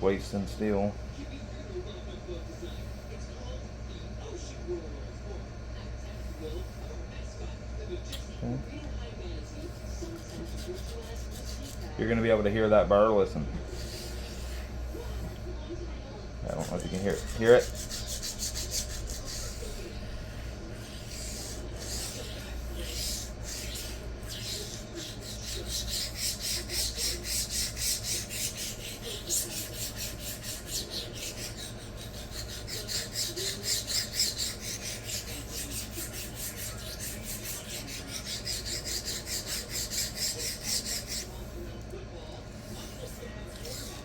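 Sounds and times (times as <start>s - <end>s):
knife scraping on sharpening stone: 23.8s - 41.3s.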